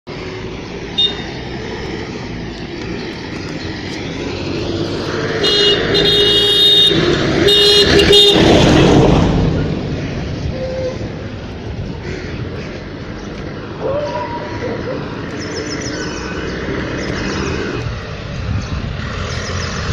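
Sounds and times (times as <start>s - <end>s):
traffic noise: 0.0s - 19.9s
van passing by: 0.1s - 19.9s
van horn honking: 5.4s - 9.0s.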